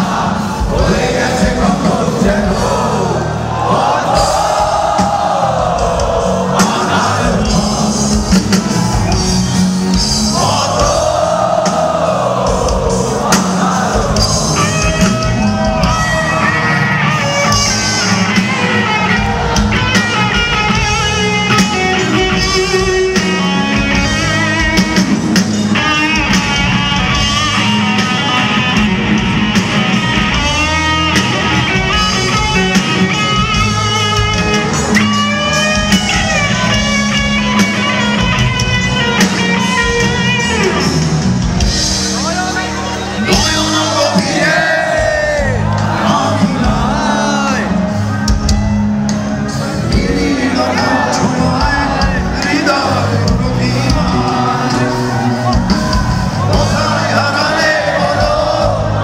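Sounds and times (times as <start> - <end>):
live rock band playing: 0.0 - 59.0
fast electric guitar lead: 12.5 - 44.3.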